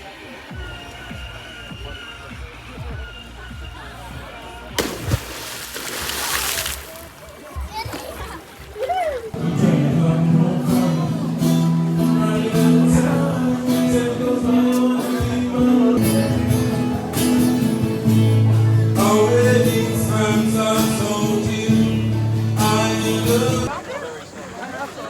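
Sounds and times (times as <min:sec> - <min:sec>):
person singing: 0:09.4 - 0:23.7
strummed acoustic guitar: 0:09.4 - 0:23.7.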